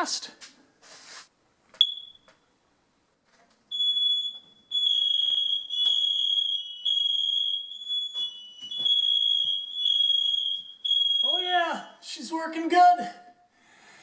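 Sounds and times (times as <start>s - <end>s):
lower tone smoke alarm: 1.8s - 2.5s, 3.7s - 12.0s
smoke alarm beeping: 1.8s - 2.5s, 3.7s - 12.0s.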